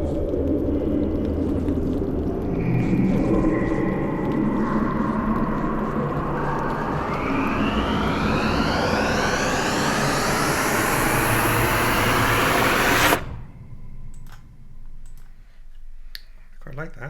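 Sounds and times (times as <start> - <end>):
loud rushing noise: 2.7 - 14.6
tones gliding upward: 2.8 - 14.9.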